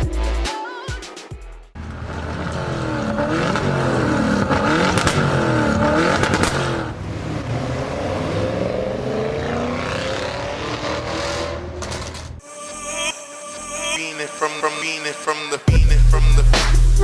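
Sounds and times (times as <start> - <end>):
car engine revving: 1.7 - 12.4.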